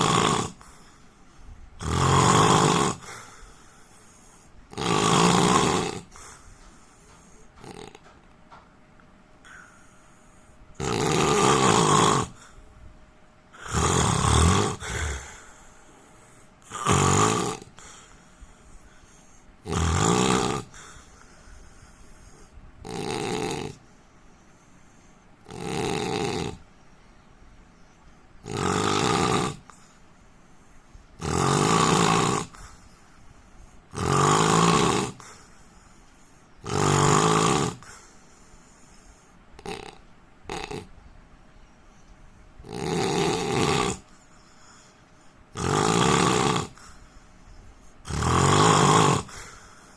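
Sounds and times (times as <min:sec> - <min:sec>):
man snoring: 0:00.0 - 0:00.7, 0:01.8 - 0:03.4, 0:04.7 - 0:06.3, 0:07.6 - 0:08.0, 0:10.8 - 0:12.5, 0:13.6 - 0:15.6, 0:16.6 - 0:18.0, 0:19.6 - 0:21.1, 0:22.2 - 0:23.8, 0:25.4 - 0:26.6, 0:28.4 - 0:29.8, 0:31.2 - 0:32.8, 0:33.9 - 0:35.4, 0:36.6 - 0:38.1, 0:39.6 - 0:40.9, 0:42.6 - 0:44.1, 0:45.5 - 0:47.0, 0:48.0 - 0:49.6.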